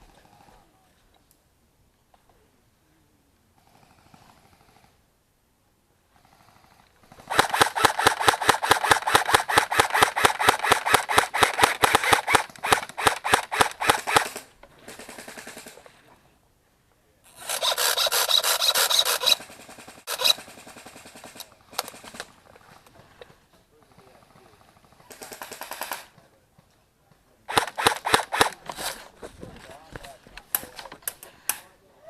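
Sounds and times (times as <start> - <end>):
airsoft gun firing bursts: 7.1 - 15.9, 17.4 - 22.4, 24.8 - 26.2, 27.5 - 29.3
airsoft gun single shots: 7.3 - 14.5, 27.5 - 28.9.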